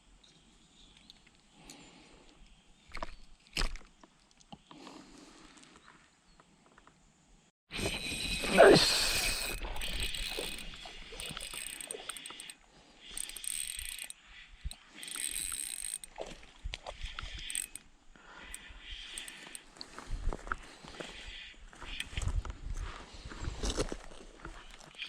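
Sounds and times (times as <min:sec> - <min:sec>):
fishing reel whirring: 0:07.8 - 0:16.4, 0:17.0 - 0:19.6.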